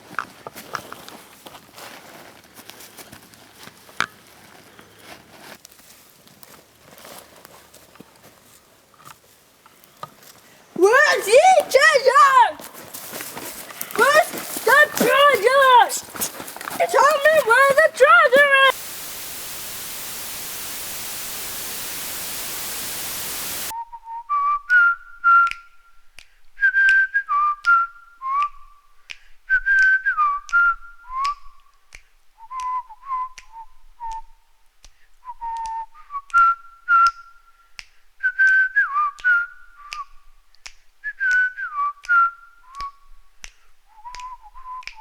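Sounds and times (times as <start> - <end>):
static hiss: 18.7 - 23.7
person whistling a tune: 22.3 - 25.9, 26.6 - 28.8, 29.5 - 31.6, 32.4 - 34.4, 35.2 - 37.6, 38.2 - 40.2, 41.0 - 43.0, 43.9 - 45.0
finger snaps: 25.4 - 25.6, 26.2 - 27.0, 28.4 - 45.0.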